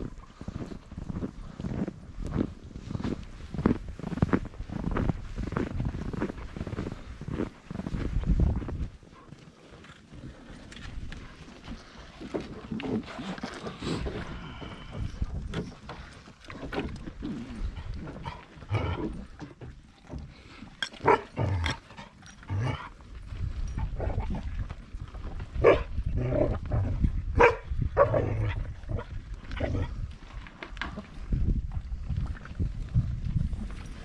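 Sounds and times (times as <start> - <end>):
dog barking: 21.0 - 21.3, 25.6 - 25.9, 27.4 - 28.3.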